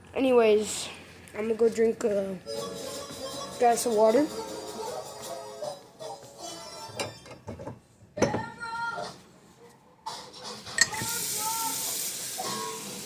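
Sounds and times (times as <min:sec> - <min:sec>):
glass clinking on hard surfaces: 0:10.8 - 0:11.1
kitchen tap running: 0:10.8 - 0:13.0.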